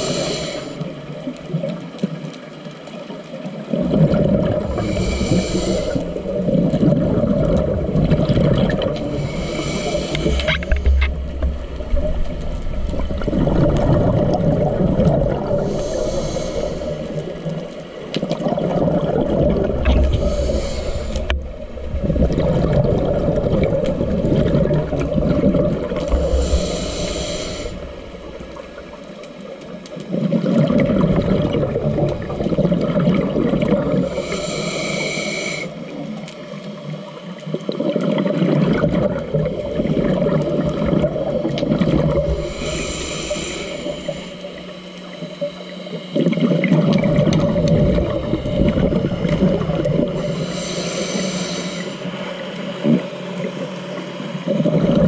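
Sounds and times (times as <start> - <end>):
regulator hissing inhale: 0.0 - 1.3, 4.6 - 6.8, 8.9 - 12.0, 15.3 - 18.1, 19.7 - 22.1, 25.8 - 29.6, 33.8 - 36.0, 42.1 - 46.4, 48.0 - 52.6
rumbling rush of exhaled bubbles: 3.7 - 29.4, 30.1 - 34.2, 37.6 - 44.9, 46.2 - 50.4, 54.5 - 55.0.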